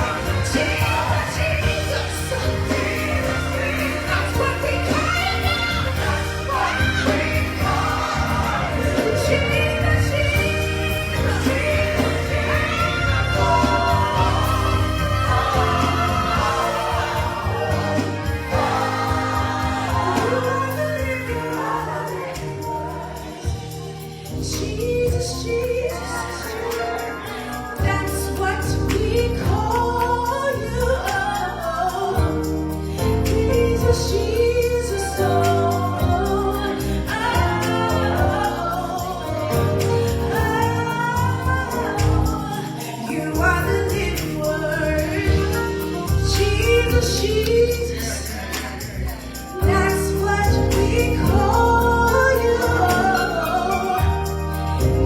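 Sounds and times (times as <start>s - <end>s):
instrumental accompaniment: 0.0s - 30.2s
gospel choir singing: 0.0s - 55.0s.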